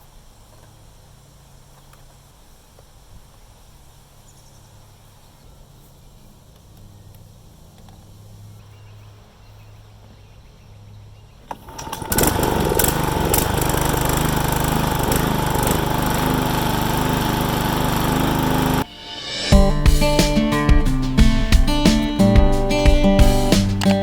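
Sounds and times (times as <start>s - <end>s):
lawn mower engine starting and running: 11.5s - 24.0s.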